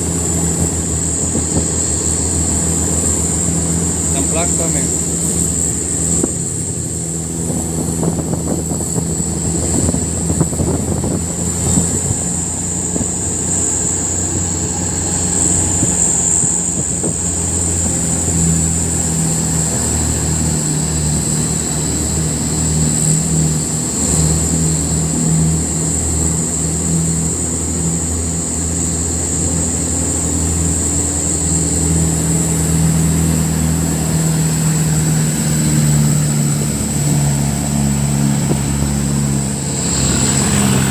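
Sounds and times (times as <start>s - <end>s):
diesel truck engine running: 0.0s - 40.9s
high-pitched whine: 0.0s - 40.9s.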